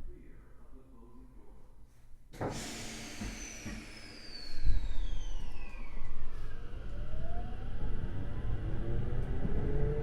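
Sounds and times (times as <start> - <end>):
train inverter whine: 2.7 - 10.0.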